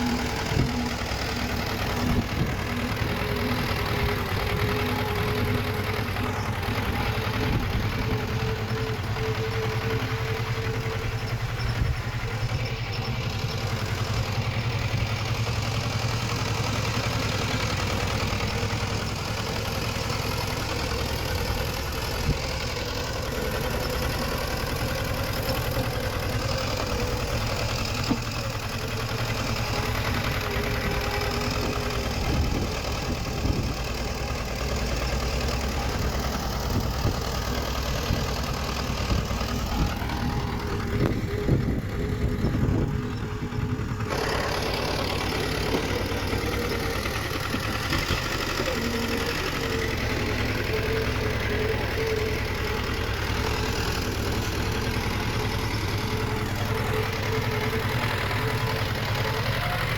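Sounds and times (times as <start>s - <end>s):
diesel engine running: 0.0s - 59.9s.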